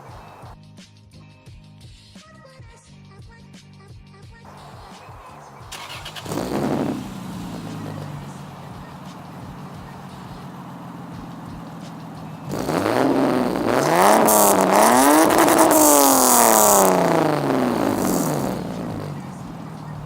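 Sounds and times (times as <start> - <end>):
car engine idling and revving: 4.5 - 20.0.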